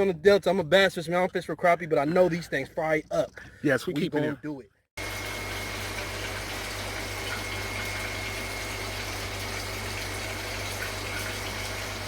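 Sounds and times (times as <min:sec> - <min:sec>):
water pump running: 0:05.0 - 0:12.0
water rushing: 0:05.0 - 0:12.0.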